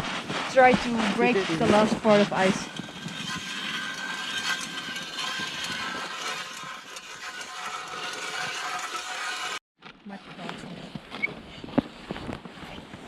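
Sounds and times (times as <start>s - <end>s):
ice auger grinding through ice: 0.0s - 9.6s.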